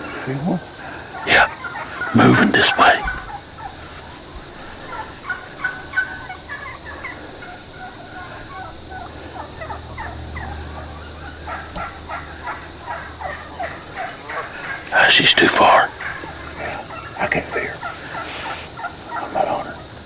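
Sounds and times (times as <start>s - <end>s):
turkey hens yelping and clucking: 4.8s - 14.9s, 16.0s - 19.8s.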